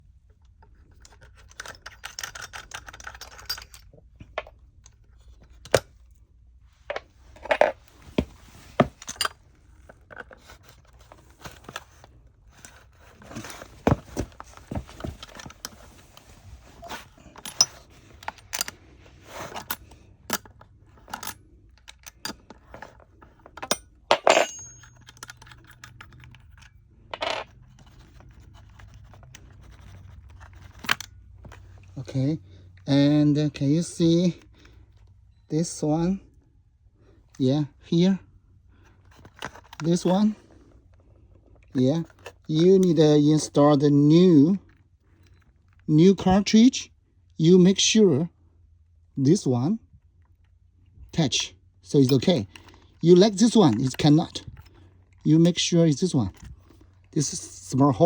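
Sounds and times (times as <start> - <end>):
shower valve parts clicking: 23.6 - 27.5.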